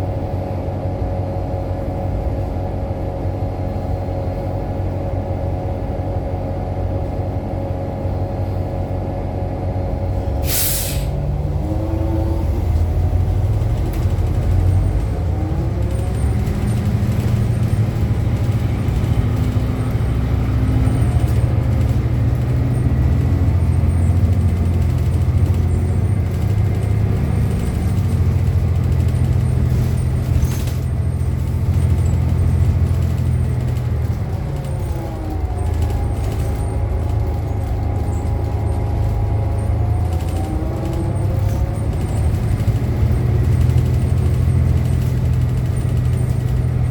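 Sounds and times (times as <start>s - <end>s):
bus drivetrain rumble: 0.0s - 46.9s
air hiss: 10.4s - 11.2s.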